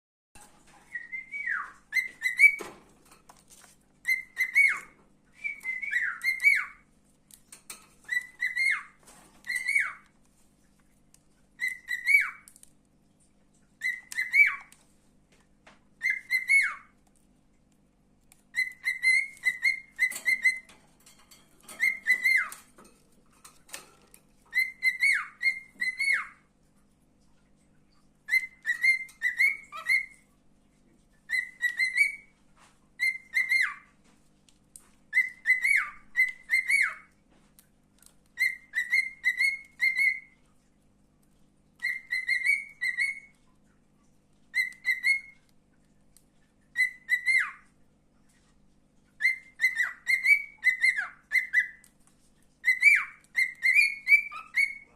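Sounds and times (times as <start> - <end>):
cockatiel whistling: 0.9 - 2.7, 4.0 - 6.8, 8.1 - 10.0, 11.6 - 12.5, 13.8 - 14.7, 16.0 - 16.9, 18.5 - 20.8, 21.7 - 22.6, 24.5 - 26.4, 28.3 - 30.2, 31.3 - 32.3, 33.0 - 33.9, 35.1 - 37.1, 38.4 - 40.3, 41.8 - 43.3, 44.5 - 45.4, 46.8 - 47.6, 49.2 - 51.8, 52.6 - 54.9.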